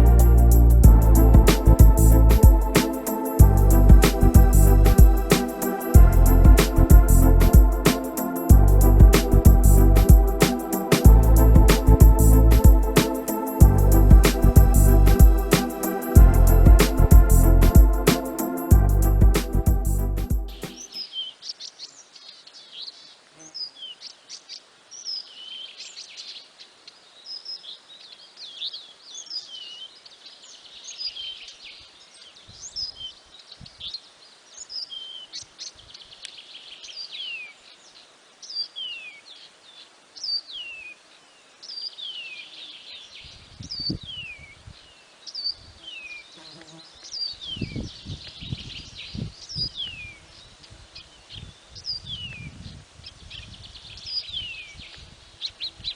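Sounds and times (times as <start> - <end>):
dull low thumps: 0.0 - 2.7, 3.4 - 5.3, 6.0 - 7.8, 8.5 - 10.4, 11.0 - 12.9, 13.6 - 15.4, 16.2 - 18.0, 18.7 - 20.6
faint high hiss: 0.0 - 55.9.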